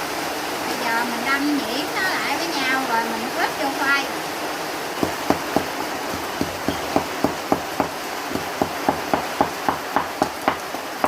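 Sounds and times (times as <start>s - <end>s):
pestle pounding in a mortar: 5.0s - 11.0s.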